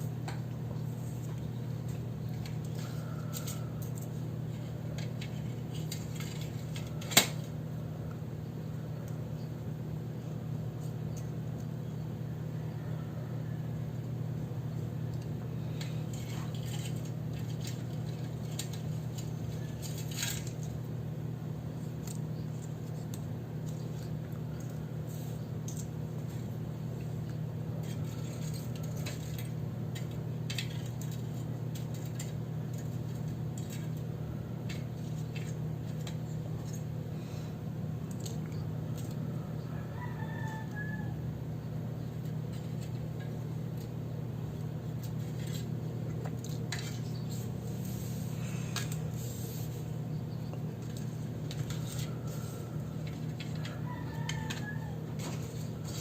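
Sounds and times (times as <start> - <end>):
steady low hum: 0.0 - 56.0
light clicks and scrapes: 50.5 - 56.0.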